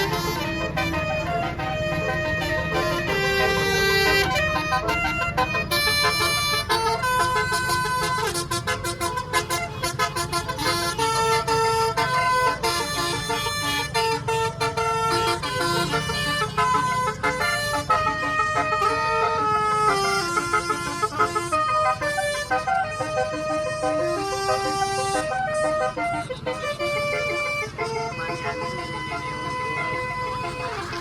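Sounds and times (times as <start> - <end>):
low engine rumble: 0.0 - 31.0
multi-tone bus horn melody: 0.0 - 31.0.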